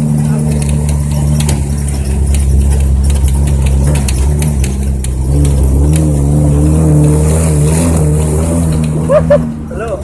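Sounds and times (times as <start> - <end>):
vehicle engine under load: 0.0 - 10.0
sharp rattling clicks: 0.2 - 6.2.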